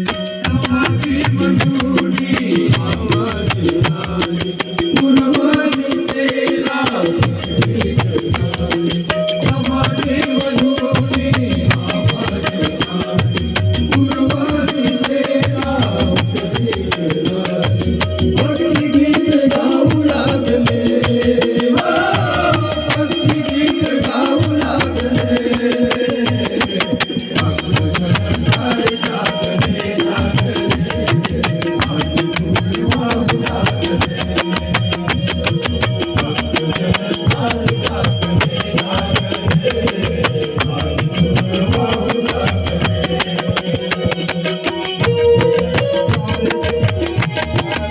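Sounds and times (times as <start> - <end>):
devotional folk music: 0.0 - 47.9
fast percussion beat: 0.0 - 47.9
jingling tambourine: 0.0 - 47.9.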